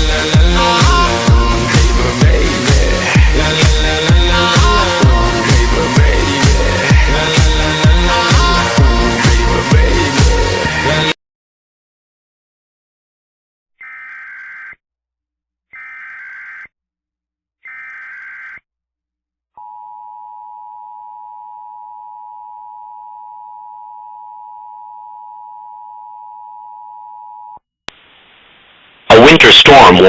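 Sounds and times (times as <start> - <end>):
buzzing digital data tones: 13.8 - 14.8, 15.8 - 16.7, 17.7 - 18.6.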